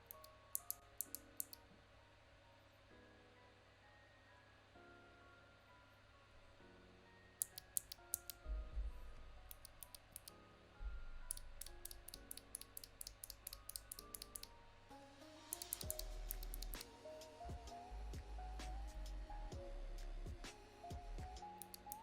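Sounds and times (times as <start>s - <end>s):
mechanical keyboard clicks: 0.0s - 1.6s, 7.4s - 8.4s, 9.5s - 10.3s, 11.2s - 14.6s, 15.5s - 16.9s, 21.4s - 22.0s
background music: 0.0s - 22.0s.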